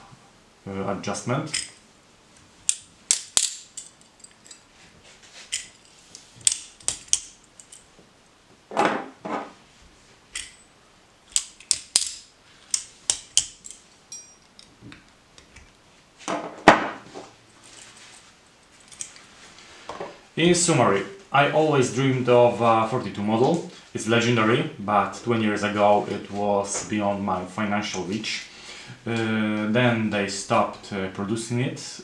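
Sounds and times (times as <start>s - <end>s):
metallic clicks of knife handles: 1.5s - 1.8s, 2.7s - 4.7s, 5.5s - 7.8s, 10.3s - 10.7s, 11.3s - 15.8s.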